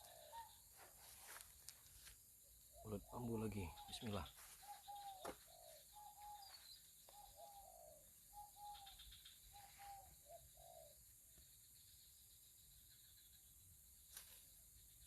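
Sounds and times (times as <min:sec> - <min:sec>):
bird cooing: 0:00.0 - 0:00.6, 0:02.8 - 0:11.0.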